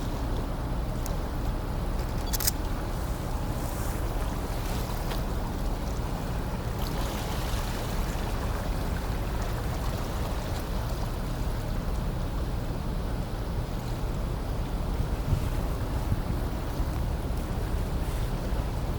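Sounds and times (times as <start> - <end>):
moving water: 0.0 - 18.9
wind on microphone: 13.6 - 18.9.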